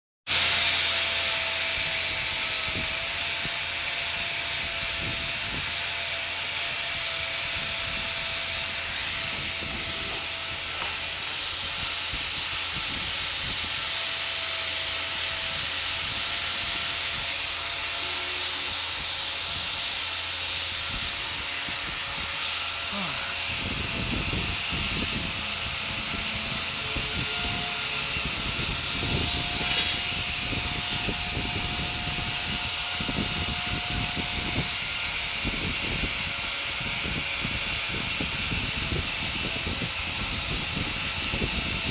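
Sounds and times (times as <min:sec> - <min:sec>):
welding hiss: 0:00.3 - 0:41.9.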